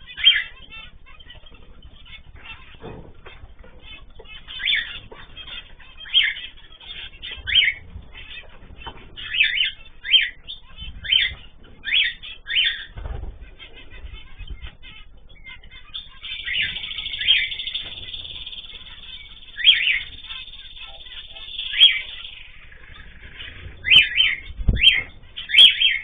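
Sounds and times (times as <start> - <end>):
pet birds calling: 0.0 - 26.0.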